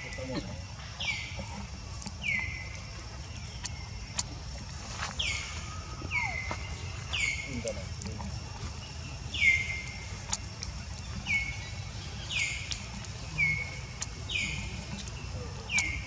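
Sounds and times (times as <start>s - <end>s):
steady low rumble: 0.0s - 16.0s
bird calling: 5.0s - 7.9s.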